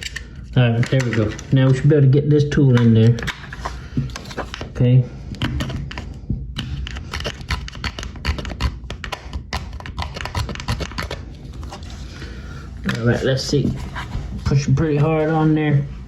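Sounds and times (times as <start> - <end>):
plastic tool scraping caulk: 2.8 - 12.0.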